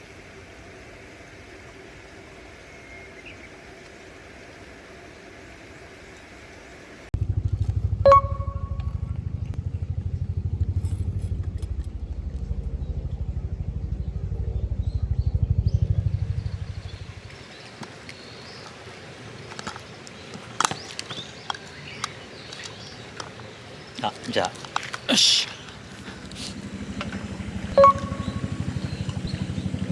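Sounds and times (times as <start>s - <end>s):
engine low pulsing rumble: 7.2s - 17.4s, 25.7s - 29.9s.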